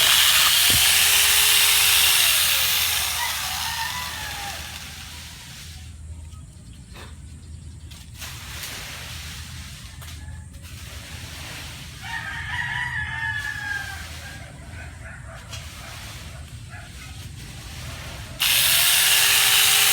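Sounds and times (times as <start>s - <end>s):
rooster crowing: 2.9s - 5.0s, 12.0s - 14.5s.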